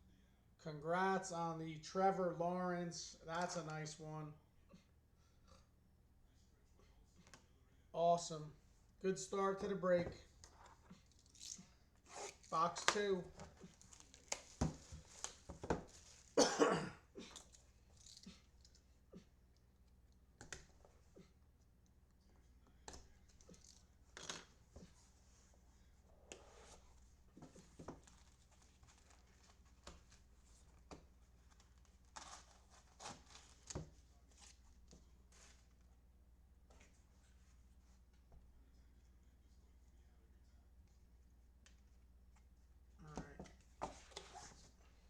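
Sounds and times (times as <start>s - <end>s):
cardboard box and cards handled: 12.4s - 16.3s
wrapping being torn: 13.6s - 15.4s, 32.0s - 33.6s.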